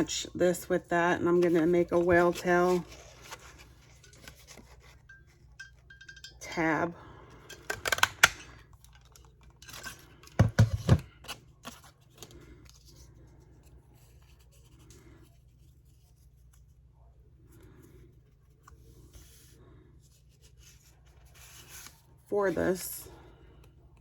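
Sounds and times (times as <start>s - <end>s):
paper rustling and scraping: 1.3s - 5.0s, 20.2s - 22.8s.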